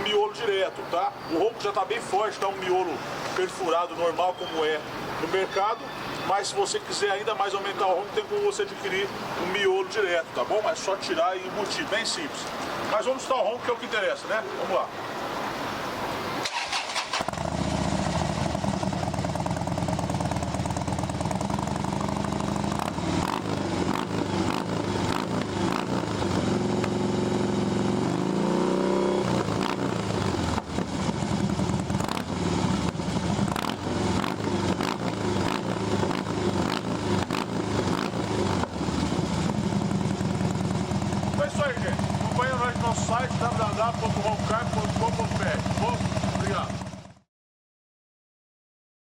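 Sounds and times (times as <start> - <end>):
motorcycle engine rumbling and revving: 16.4 - 47.3.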